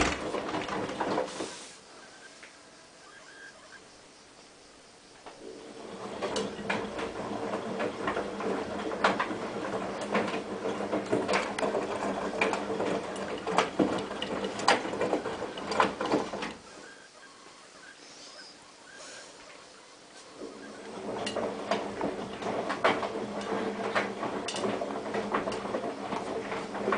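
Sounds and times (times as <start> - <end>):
washer motor hum: 0.0 - 1.5, 5.4 - 17.0, 19.7 - 26.9
clicks and knocks from drum: 5.9 - 16.6, 20.4 - 26.9.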